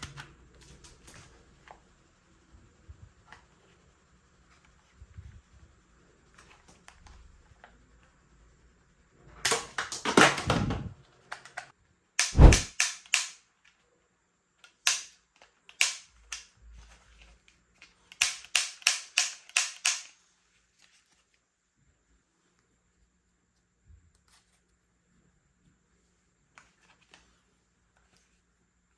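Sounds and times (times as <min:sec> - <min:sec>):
toy gun clicks and snaps: 0:11.3 - 0:13.8, 0:14.6 - 0:16.5, 0:17.8 - 0:20.2.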